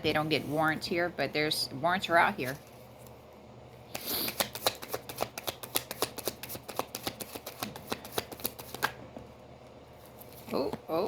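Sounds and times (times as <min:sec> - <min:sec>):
cards being shuffled: 0:03.9 - 0:09.0.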